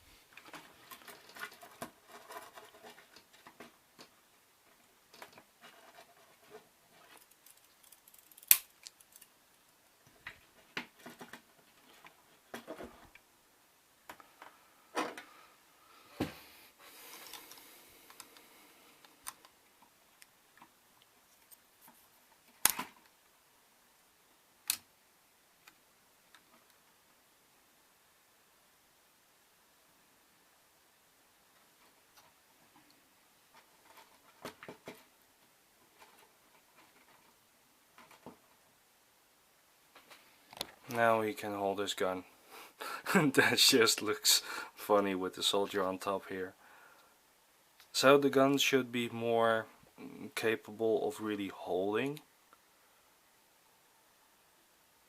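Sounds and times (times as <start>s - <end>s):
soft plastic rustling: 0.0s - 13.2s, 31.5s - 38.8s
plastic pieces clicking and snapping: 7.1s - 9.3s.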